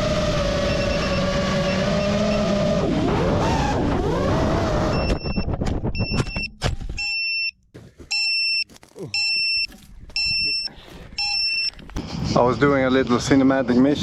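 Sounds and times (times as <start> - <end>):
drone motors whirring: 0.0 - 6.2
high two-tone warning beep: 0.7 - 2.5, 4.9 - 11.8.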